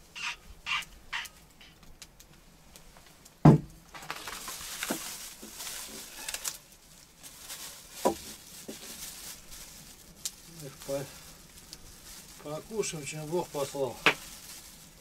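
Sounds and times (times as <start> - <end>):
rustling with light clicks: 0.8 - 15.0
loud thump: 3.4 - 3.7.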